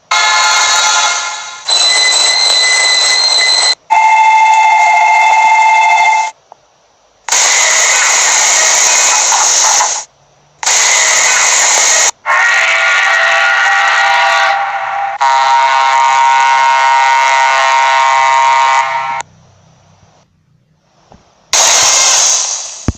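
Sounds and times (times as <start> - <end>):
bursts of hissing steam: 7.3 - 12.1, 21.5 - 22.9
steam whistle: 12.3 - 19.2.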